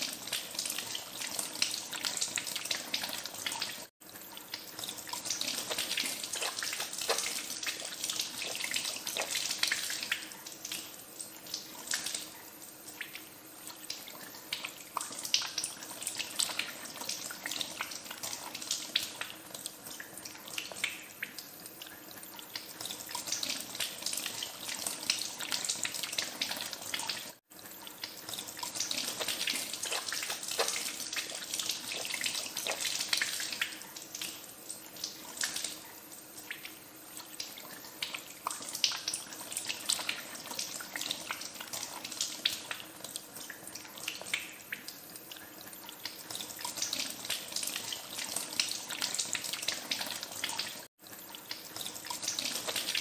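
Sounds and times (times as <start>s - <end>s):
hands washing with splashes: 0.0s - 10.9s, 22.5s - 34.4s.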